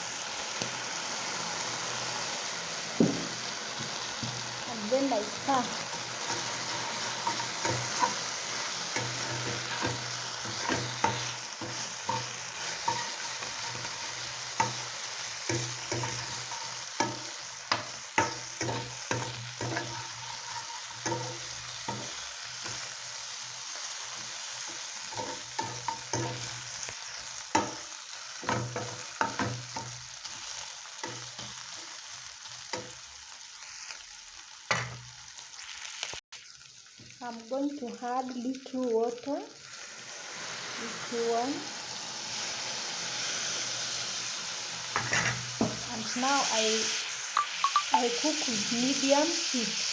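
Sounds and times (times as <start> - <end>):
meat sizzling in oil: 0.0 - 49.9
utensil scraping a pan: 5.7 - 22.9, 45.0 - 46.2.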